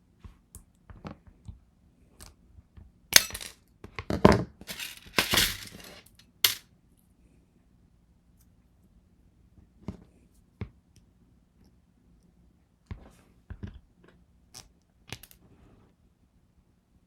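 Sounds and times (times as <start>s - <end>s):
metal tools tapping on surface: 4.7s - 6.6s.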